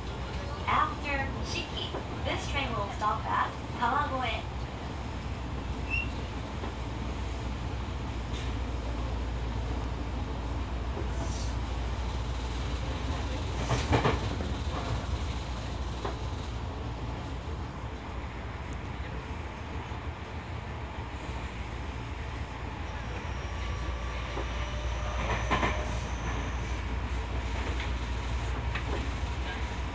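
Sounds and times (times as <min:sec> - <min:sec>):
train wheels rumbling on rail: 0:00.0 - 0:29.9.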